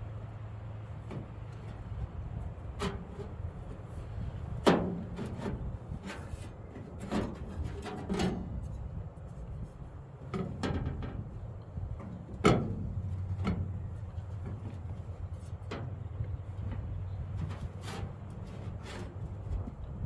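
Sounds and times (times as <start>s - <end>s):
knocks and clunks: 10.3s - 19.9s.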